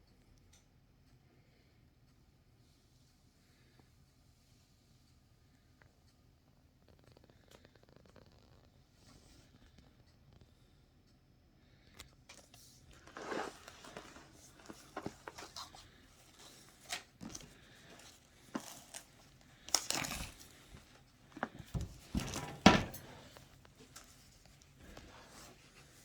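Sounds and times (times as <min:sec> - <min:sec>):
packaging crinkling and tearing: 0:13.0 - 0:21.6.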